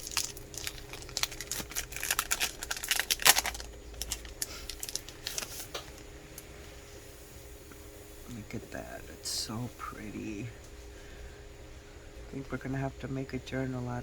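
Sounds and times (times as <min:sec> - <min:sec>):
paper rustling and crinkling: 0:00.0 - 0:06.0.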